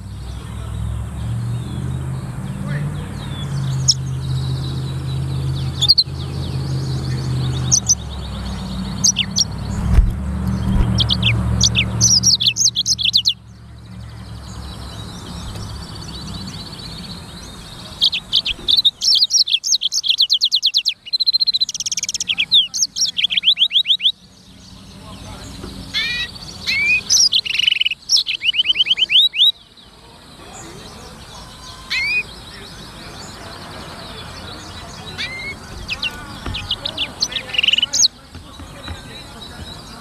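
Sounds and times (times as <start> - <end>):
canary singing high trills: 2.8 - 9.8, 10.5 - 13.5, 14.1 - 24.8, 25.9 - 29.8, 30.6 - 33.4, 34.3 - 38.2.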